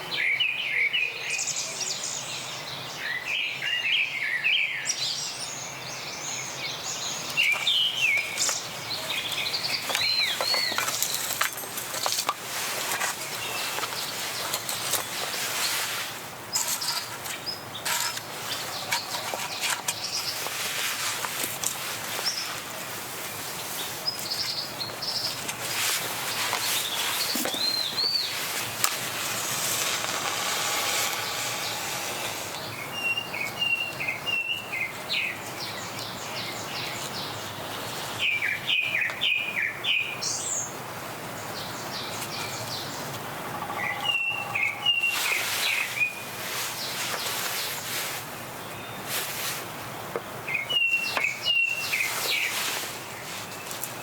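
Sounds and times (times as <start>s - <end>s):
wind hissing in trees: 1.2s - 38.7s, 40.2s - 54.0s
small birds chirping: 4.9s - 11.4s, 23.4s - 40.7s.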